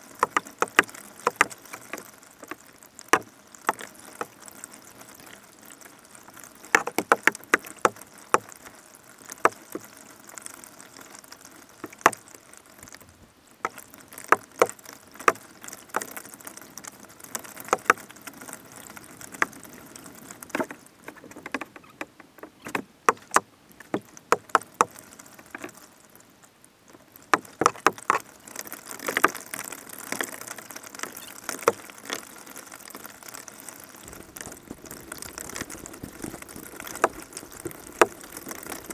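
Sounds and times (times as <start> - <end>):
paddle dipping and dripping: 0.0 - 38.9
paddle knocks and splashes: 0.2 - 4.4, 6.7 - 8.6, 20.4 - 24.9, 27.3 - 29.5, 34.0 - 38.9.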